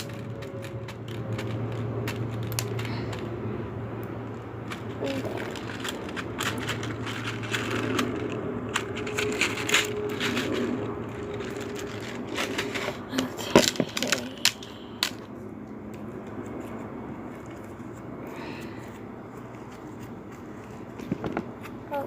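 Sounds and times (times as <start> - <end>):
plastic beads clicking: 0.0 - 3.4, 4.0 - 15.3
low hum: 0.0 - 21.6.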